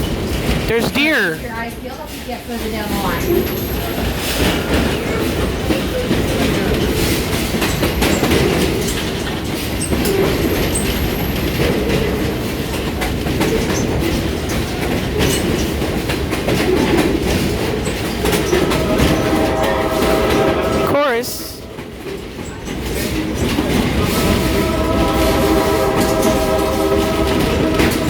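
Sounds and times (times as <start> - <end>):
train rumbling on track: 0.0 - 28.0
steady pitched tone: 24.3 - 28.0.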